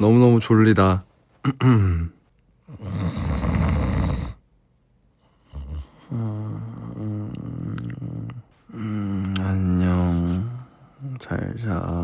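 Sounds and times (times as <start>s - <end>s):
man mock snoring: 2.7s - 4.4s, 5.5s - 9.2s.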